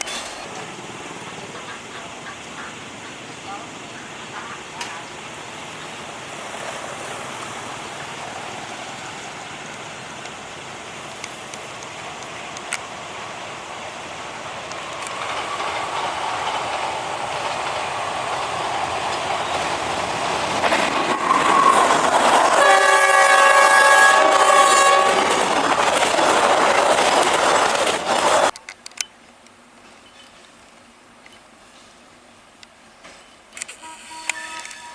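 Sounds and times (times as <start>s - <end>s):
diesel train passing: 0.0s - 34.9s
train horn blast: 22.4s - 25.4s, 33.8s - 34.9s.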